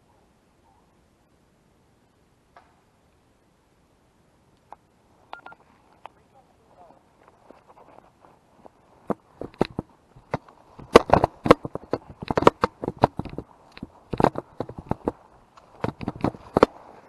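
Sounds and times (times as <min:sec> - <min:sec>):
twigs snapping underfoot: 0:07.2 - 0:16.9
footsteps crunching through dry leaves: 0:13.4 - 0:17.0.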